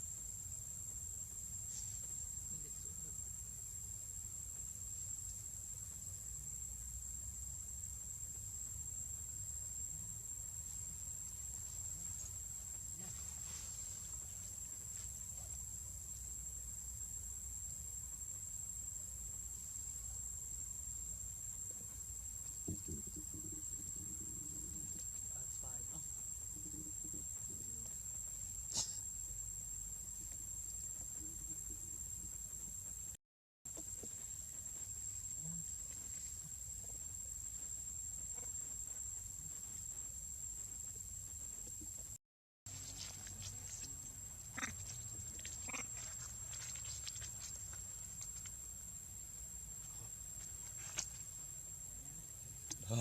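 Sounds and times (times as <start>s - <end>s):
insects shrilling: 28.6s - 29.4s, 42.8s - 48.6s.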